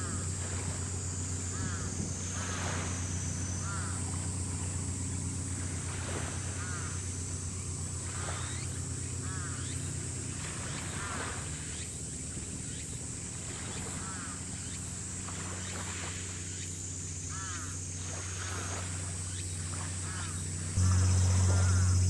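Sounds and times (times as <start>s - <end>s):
low mechanical hum: 0.0s - 22.0s
birds calling: 1.2s - 5.6s, 6.4s - 15.0s, 16.5s - 22.0s
loud steady low tone: 20.5s - 22.0s.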